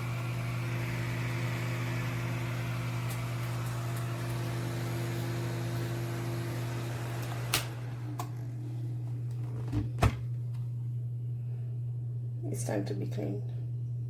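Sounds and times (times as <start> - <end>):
space heater fan hum: 0.0 - 14.0
heater switch click: 7.2 - 8.4.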